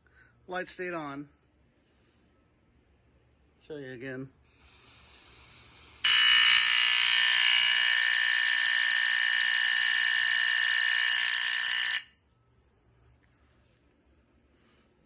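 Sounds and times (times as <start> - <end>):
smoke alarm horn: 6.0 - 12.2.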